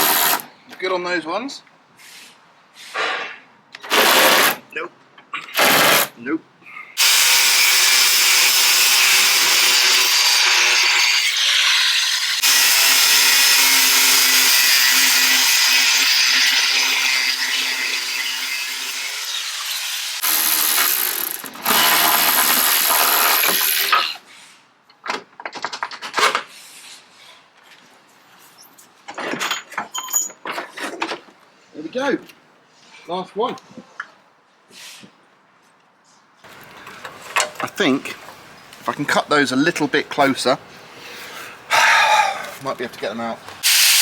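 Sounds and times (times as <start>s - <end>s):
angle grinder cutting metal: 0.0s - 0.4s, 7.0s - 24.2s.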